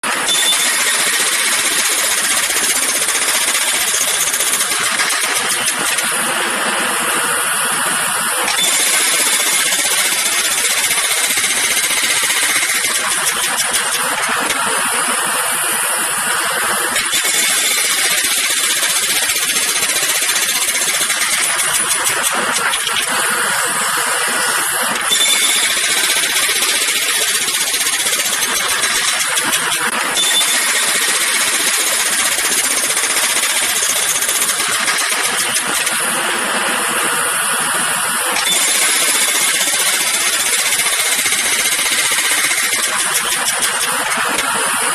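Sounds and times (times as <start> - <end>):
jackhammer hammering: 0.0 - 44.9.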